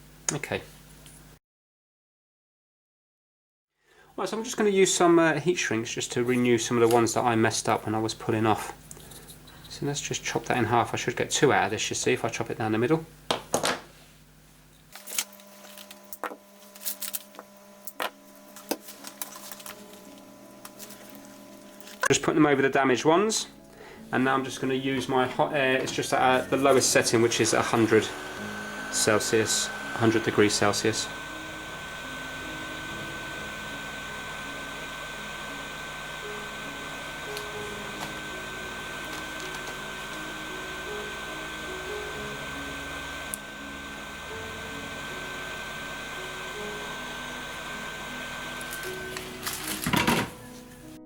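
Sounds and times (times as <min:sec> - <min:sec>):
soft background music: 0:18.2 - 0:51.0
hot air gun blowing: 0:25.9 - 0:50.9.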